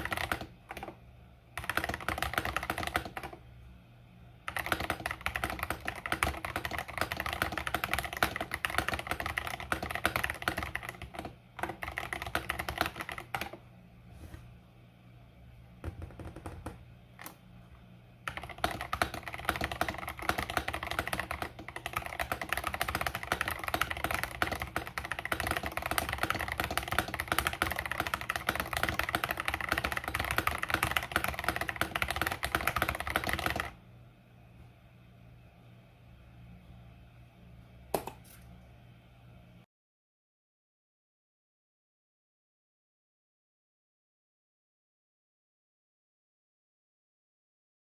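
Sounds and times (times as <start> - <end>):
fast typing on mechanical keyboard: 0.0 - 3.4, 4.4 - 13.6, 15.8 - 17.3, 18.3 - 33.8.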